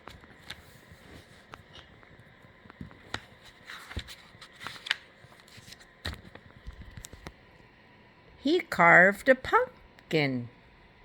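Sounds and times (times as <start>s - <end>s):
faint clicks and taps: 0.0s - 3.3s, 3.9s - 7.4s.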